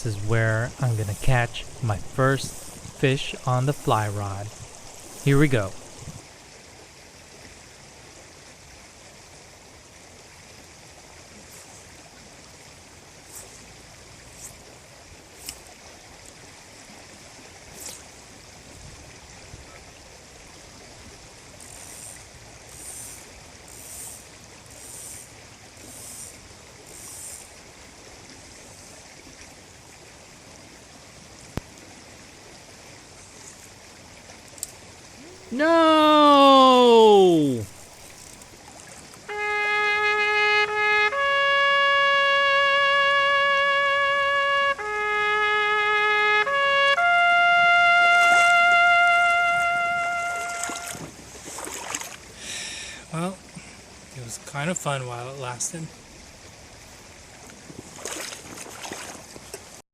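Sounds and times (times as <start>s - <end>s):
short high-pitched rasps: 0.0s - 6.2s
river water flowing over rocks: 0.0s - 40.1s, 48.0s - 55.4s, 56.0s - 59.8s.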